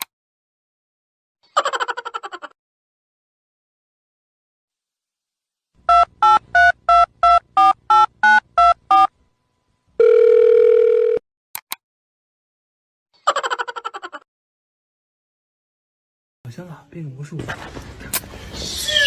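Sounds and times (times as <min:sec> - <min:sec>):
steady dial tone: 0:10.0 - 0:11.2.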